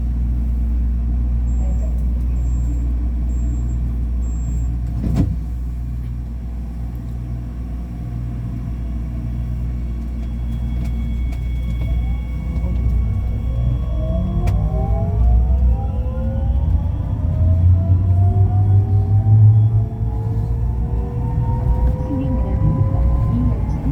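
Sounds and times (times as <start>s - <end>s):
low rumble: 0.0s - 23.9s
train doors clunking shut: 4.8s - 5.6s
train motor whine: 9.1s - 23.9s.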